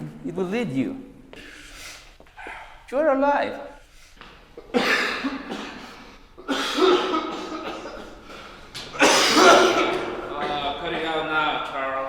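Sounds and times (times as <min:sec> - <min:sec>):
man coughing hard: 0:04.6 - 0:11.4.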